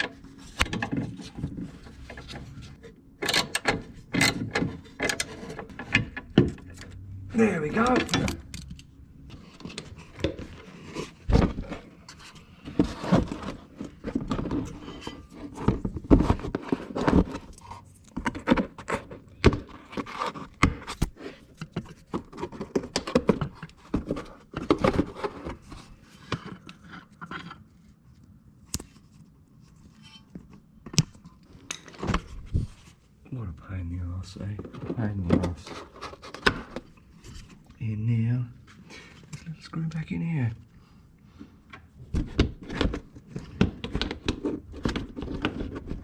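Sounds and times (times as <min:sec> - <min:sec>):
knocks and scrapes of tools on plastic: 0:09.3 - 0:27.7, 0:41.7 - 0:46.0.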